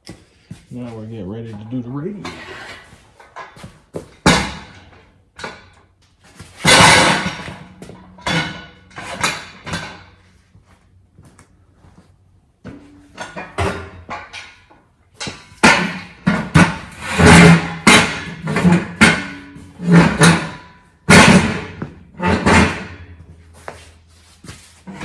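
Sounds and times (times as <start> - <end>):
hard parts knocking and clattering: 2.2 - 10.3, 12.6 - 23.7.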